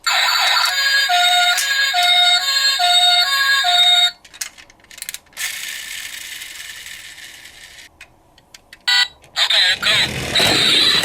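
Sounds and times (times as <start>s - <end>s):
toy two-tone siren: 0.0s - 4.2s, 8.9s - 11.0s.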